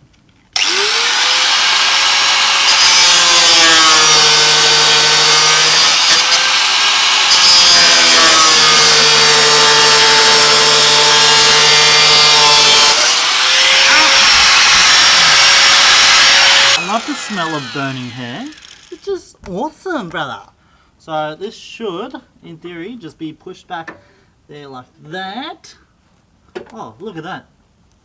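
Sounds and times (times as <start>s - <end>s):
angle grinder cutting metal: 0.6s - 19.0s.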